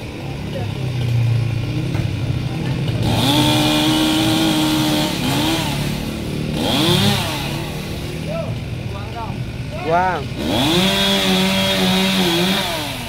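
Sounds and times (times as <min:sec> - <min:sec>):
chainsaw revving: 0:02.5 - 0:08.3, 0:09.3 - 0:13.0.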